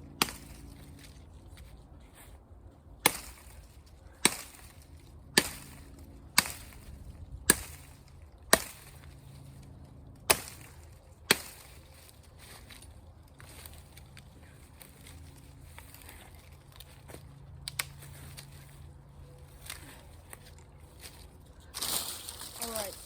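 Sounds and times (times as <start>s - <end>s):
blade chopping green wood: 3.0s - 3.6s, 4.2s - 4.7s, 5.4s - 6.8s, 7.5s - 9.1s, 10.2s - 11.8s.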